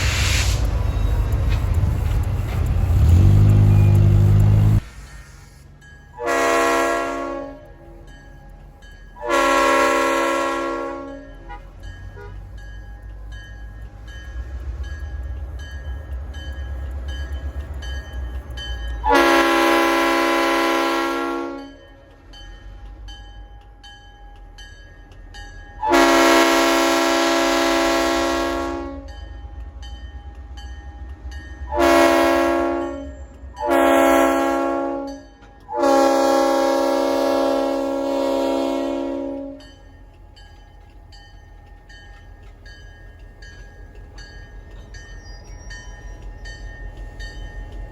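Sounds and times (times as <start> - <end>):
train rumbling: 0.0 - 47.9
locomotive air horn blasts: 6.2 - 7.7, 9.2 - 12.4, 19.0 - 21.8, 25.8 - 29.1, 31.7 - 39.7.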